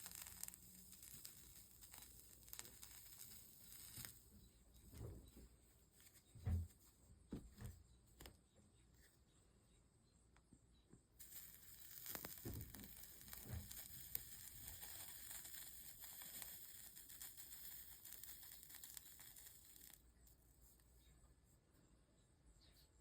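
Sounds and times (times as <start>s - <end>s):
soldering flux sizzling and crackling: 0.0s - 6.6s, 11.2s - 21.0s.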